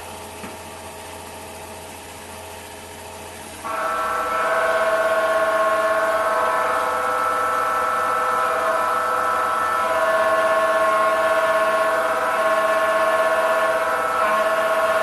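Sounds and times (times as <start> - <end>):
drill motor running: 0.0 - 15.0
drill bit whining cutting steel: 3.5 - 15.0.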